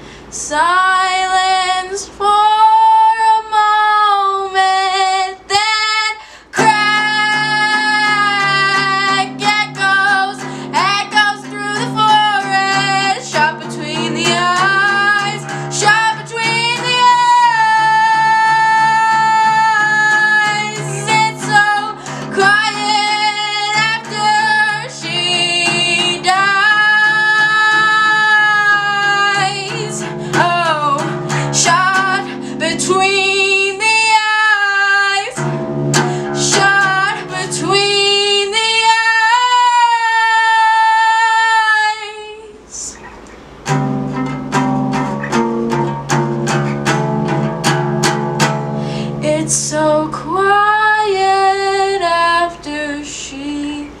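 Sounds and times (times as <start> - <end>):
guitar accompaniment: 6.3 - 54.0
high voice singing: 6.6 - 43.2.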